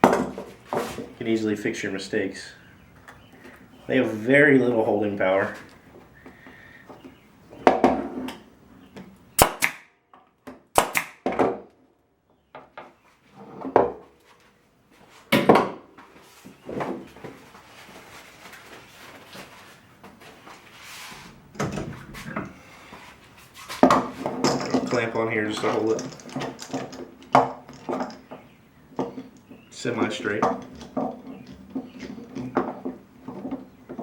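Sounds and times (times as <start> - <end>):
wooden knocks and clatters: 0.0 - 1.2, 15.3 - 20.6, 21.4 - 34.0
sharp clicks: 9.4 - 9.9, 10.8 - 11.2
rustling: 16.0 - 29.8.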